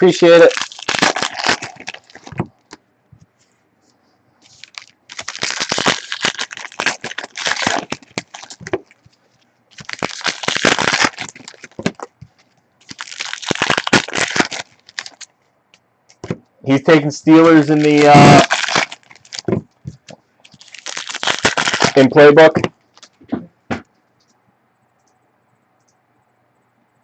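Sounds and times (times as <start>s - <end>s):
plastic packaging crinkling and tearing: 0.0s - 2.8s, 4.4s - 15.3s, 17.3s - 23.2s.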